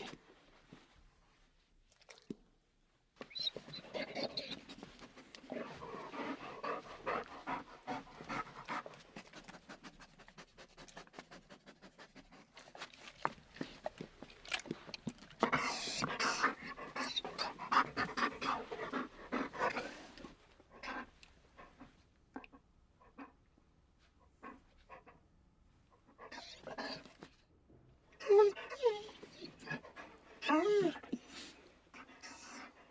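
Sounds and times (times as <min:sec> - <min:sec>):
dog panting: 0:03.4 - 0:22.0, 0:26.0 - 0:27.3, 0:28.2 - 0:32.9.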